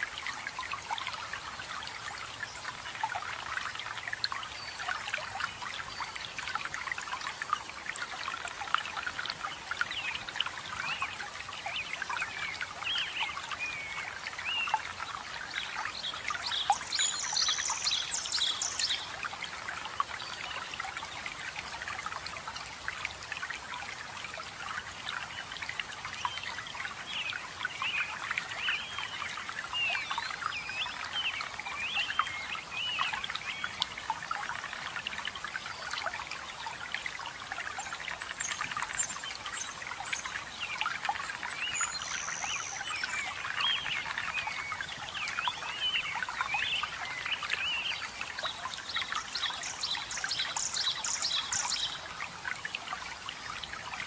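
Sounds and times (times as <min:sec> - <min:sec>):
water trickling over rocks: 0:00.0 - 0:54.0.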